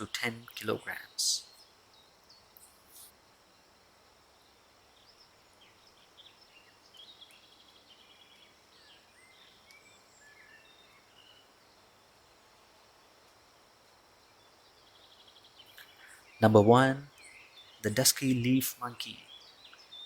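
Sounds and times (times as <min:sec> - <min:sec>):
bird chirps and trill: 0:00.0 - 0:02.8, 0:14.3 - 0:20.0
high insect hiss: 0:00.0 - 0:20.0.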